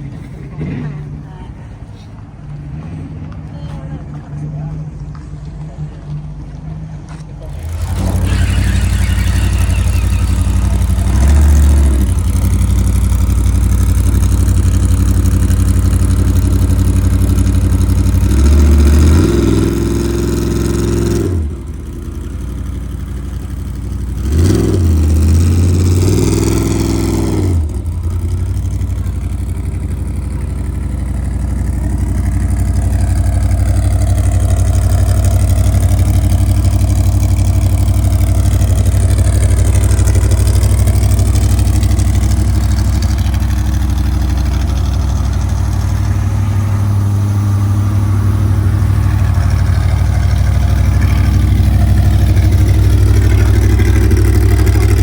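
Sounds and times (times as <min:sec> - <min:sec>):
engine idling and revving: 0:00.0 - 0:55.0.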